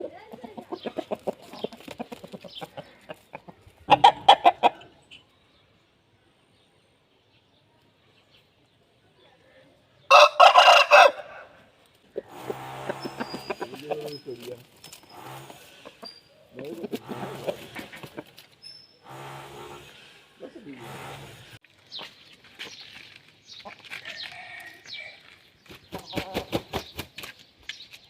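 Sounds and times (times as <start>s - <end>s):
rooster clucking: 0.0s - 5.0s, 12.1s - 21.6s, 25.9s - 26.8s.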